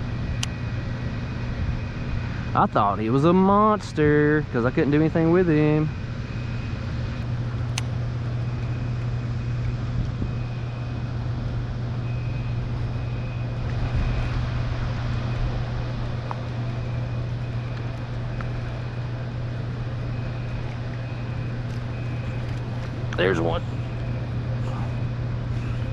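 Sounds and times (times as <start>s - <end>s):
low motor hum: 0.0s - 25.9s
faint high steady tone: 16.6s - 25.9s.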